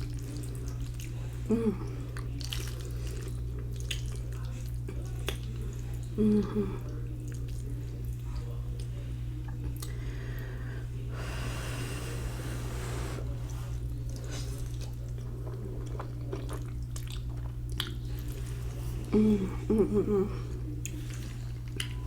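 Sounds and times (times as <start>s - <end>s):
steady low hum: 0.0s - 22.0s
mouth clicks and chewing: 2.1s - 5.6s, 14.1s - 18.4s, 20.8s - 22.0s.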